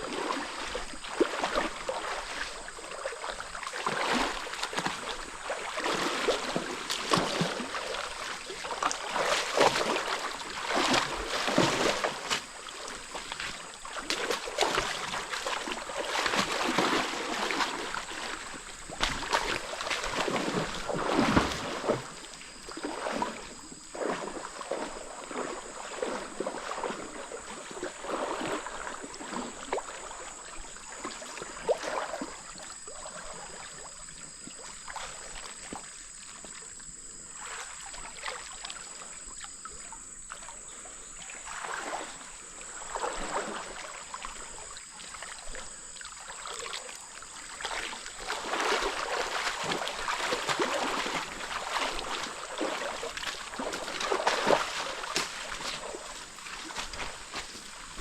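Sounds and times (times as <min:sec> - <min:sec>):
water splashing and sloshing: 0:00.0 - 0:58.0
flowing water rushing: 0:37.7 - 0:58.0.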